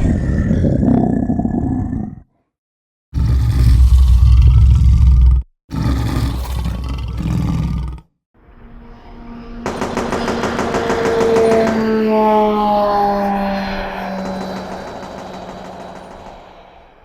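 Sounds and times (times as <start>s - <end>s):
loud roars: 0.0s - 2.3s, 3.2s - 8.1s, 10.6s - 17.0s.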